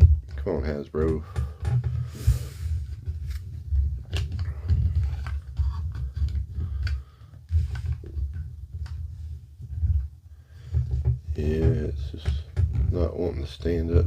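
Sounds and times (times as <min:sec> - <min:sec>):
plastic figure clicks and knocks: 0:00.0 - 0:02.0, 0:10.7 - 0:13.1.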